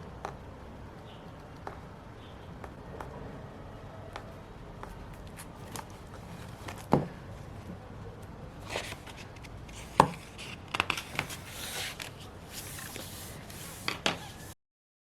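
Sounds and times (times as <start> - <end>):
paper and stickers rustling: 4.8 - 14.6.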